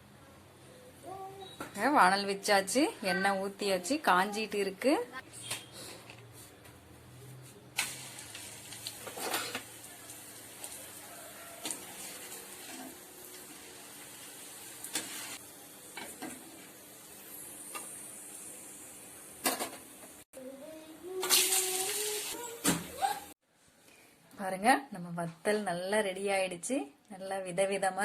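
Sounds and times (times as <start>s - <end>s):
rice crisps sizzling in hot oil: 7.8s - 19.4s, 21.2s - 22.4s.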